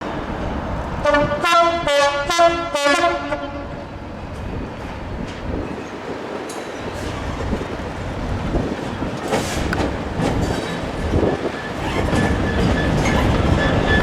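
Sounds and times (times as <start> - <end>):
train running rumble: 0.0 - 14.0
two-tone locomotive horn blasts: 1.0 - 3.9.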